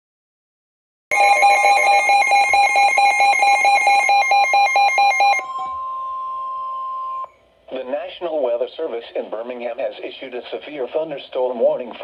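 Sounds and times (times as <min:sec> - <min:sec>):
rapid pulsing alarm beeps: 0:01.1 - 0:07.4
steady alarm tone: 0:01.1 - 0:07.5.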